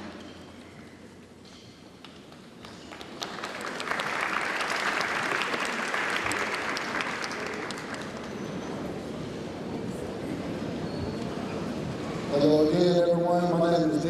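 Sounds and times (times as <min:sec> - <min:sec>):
audience applauding: 0:02.9 - 0:08.6.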